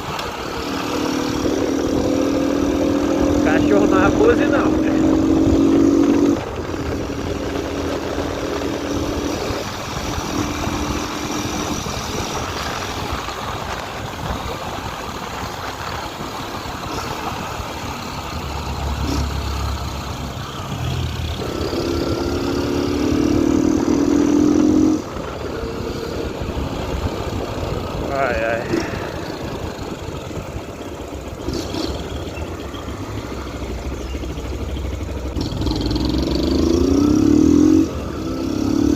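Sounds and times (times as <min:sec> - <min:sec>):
motorcycle engine running: 0:00.0 - 0:38.9.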